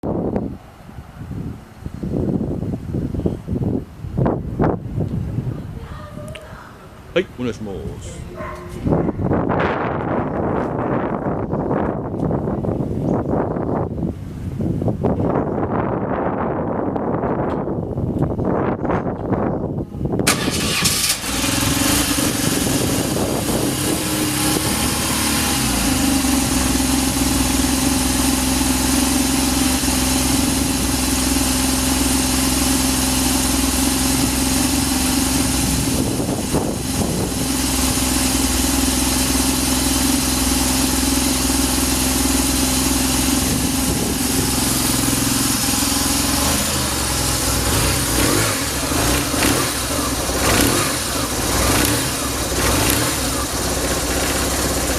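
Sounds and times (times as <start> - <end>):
electric starter cranking: 20.3 - 25.8, 43.9 - 54.9
motorcycle engine idling: 20.3 - 54.9.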